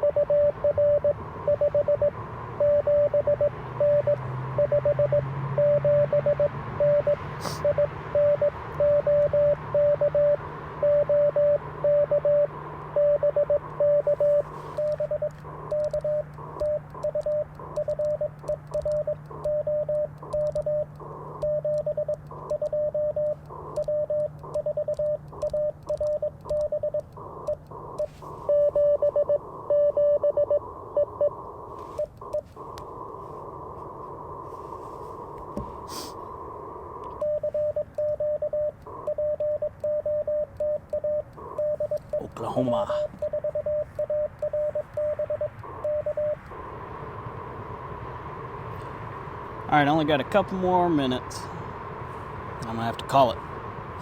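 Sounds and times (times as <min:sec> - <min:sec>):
faint higher-pitched morse code: 0:00.0 - 0:32.5, 0:37.1 - 0:46.6
morse code beeps: 0:00.0 - 0:32.5, 0:37.1 - 0:46.6
radio receiver hiss: 0:07.0 - 0:54.0.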